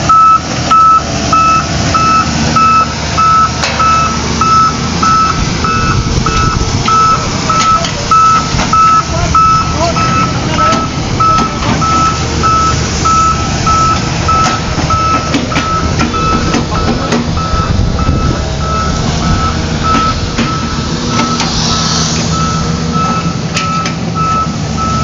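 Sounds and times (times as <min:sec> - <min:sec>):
diesel engine running: 0:00.0 - 0:25.0
knocks of construction work: 0:00.0 - 0:25.0
reversing alarm beeping: 0:00.0 - 0:25.0.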